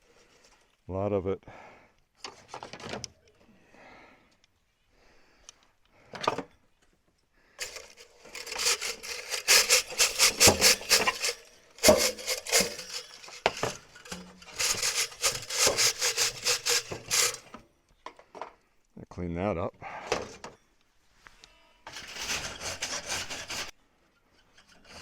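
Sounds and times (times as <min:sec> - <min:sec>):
chimney brush scraping in pipe: 0:07.6 - 0:17.6, 0:21.9 - 0:25.0.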